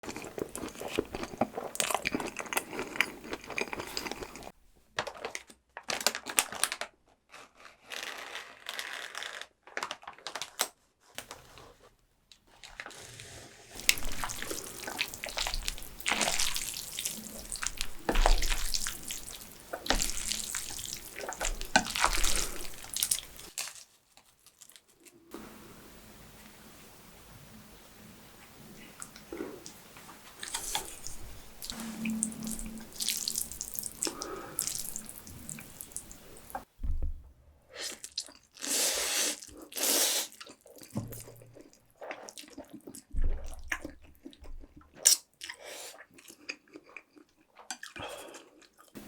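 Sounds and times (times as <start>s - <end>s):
wet chewing and slurping: 0.0s - 4.6s, 13.8s - 23.8s, 29.0s - 36.7s, 37.8s - 49.0s.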